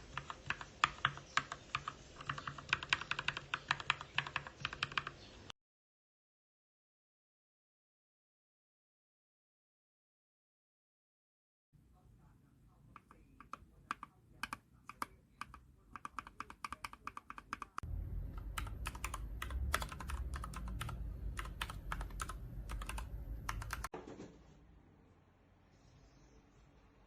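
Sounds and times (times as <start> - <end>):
mechanical keyboard typing: 0.0 - 5.2, 12.9 - 23.9
low rumble: 17.8 - 21.4.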